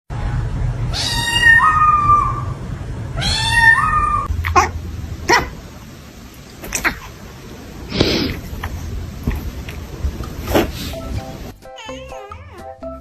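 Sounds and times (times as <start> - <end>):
cat meowing: 0.9 - 2.6, 3.2 - 5.6, 11.8 - 12.7.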